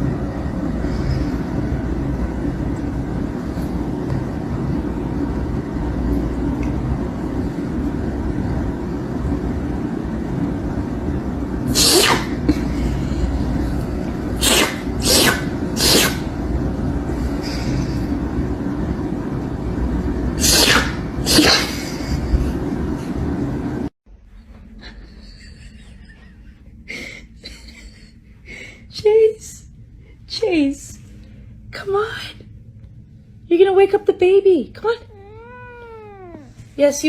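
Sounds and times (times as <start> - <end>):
steady low rumble: 0.0 - 37.0
pet sneezing: 11.7 - 12.7, 14.4 - 16.3, 20.4 - 22.2.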